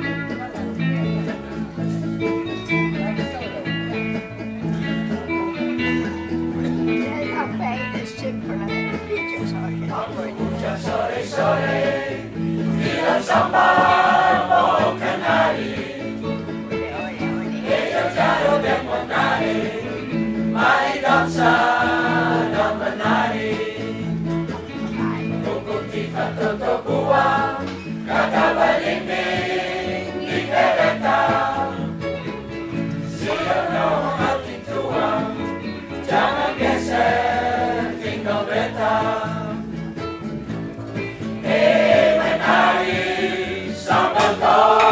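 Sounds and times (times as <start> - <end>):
instrumental accompaniment: 0.0 - 44.9
choir singing: 9.9 - 16.4, 17.4 - 24.6, 25.3 - 32.1, 33.0 - 39.8, 41.3 - 44.9.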